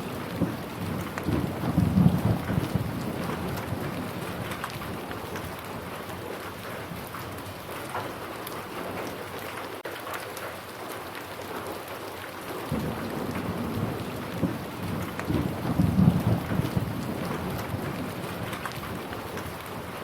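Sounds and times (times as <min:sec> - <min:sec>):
thunder rolling: 0:00.0 - 0:05.2, 0:12.7 - 0:20.0
steady rain: 0:00.0 - 0:20.0.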